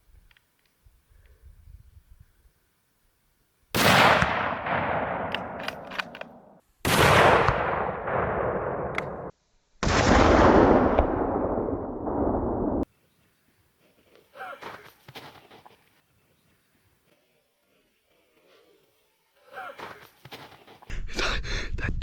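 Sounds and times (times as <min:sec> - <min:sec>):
rifle shot with echo: 0:03.8 - 0:12.8.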